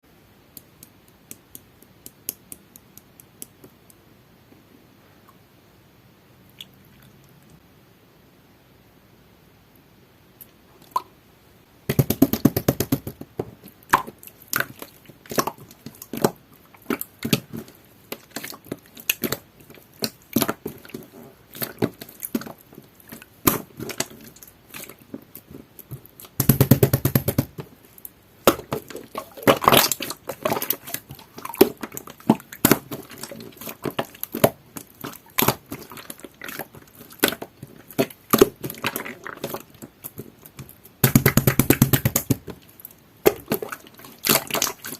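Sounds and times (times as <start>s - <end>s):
slime squished by hand: 13.6s - 44.9s.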